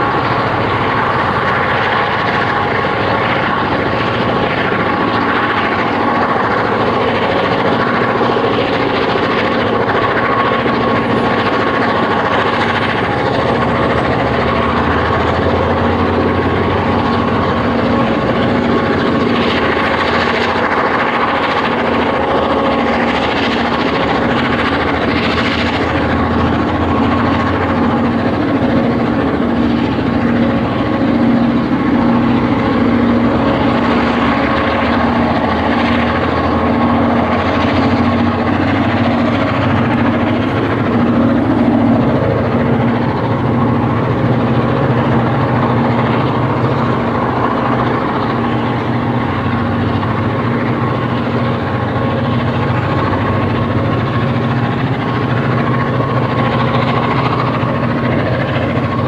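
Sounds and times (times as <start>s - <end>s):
diesel locomotive engine drone: 0.0s - 59.0s.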